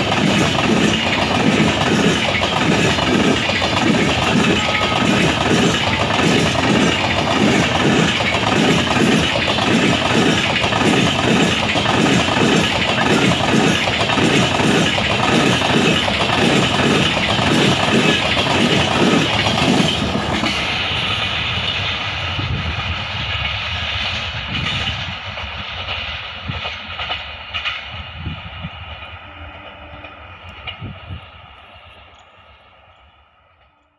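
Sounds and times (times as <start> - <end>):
train wheels clattering over rail joints: 0.0 - 29.2
train rumble: 0.0 - 33.9.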